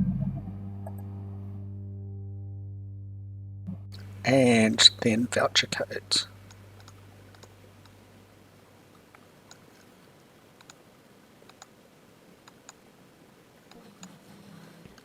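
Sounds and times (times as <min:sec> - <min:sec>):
computer mouse clicks: 0:06.5 - 0:08.0, 0:08.9 - 0:09.9, 0:10.6 - 0:10.8, 0:11.4 - 0:11.8, 0:12.4 - 0:12.8, 0:13.7 - 0:14.2.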